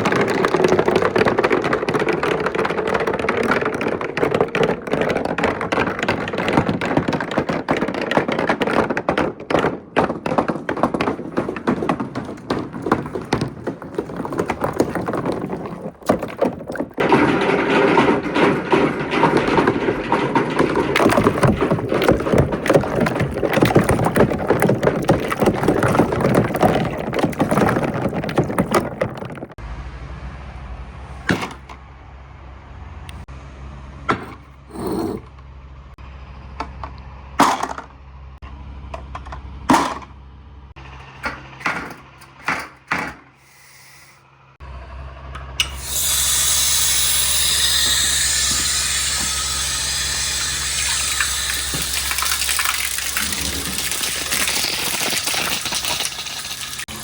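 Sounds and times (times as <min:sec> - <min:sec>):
glass marbles rolling and clacking: 0:00.0 - 0:29.6, 0:45.6 - 0:57.0
running water: 0:50.7 - 0:57.0.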